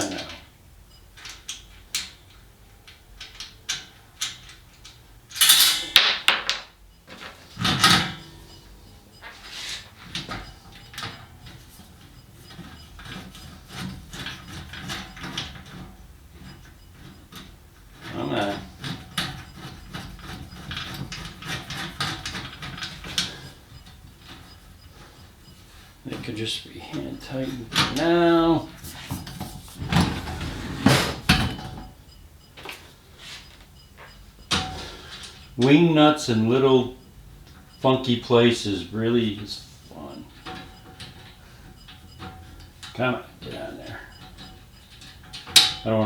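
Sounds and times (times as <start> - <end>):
small metal clicks and knocks: 0.0 - 29.8, 33.4 - 46.0
metal parts clattering: 5.3 - 8.4
metal scrapes and knocks: 28.7 - 31.9.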